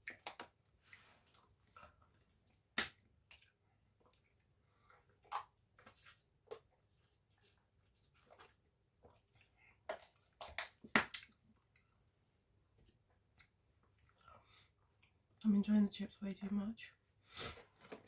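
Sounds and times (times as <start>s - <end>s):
mouth chewing and smacking: 13.3s - 15.4s.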